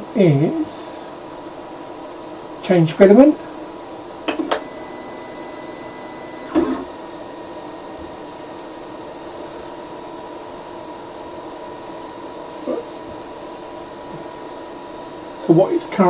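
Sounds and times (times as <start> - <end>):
printer mechanical hum with whine: 0.0 - 16.0.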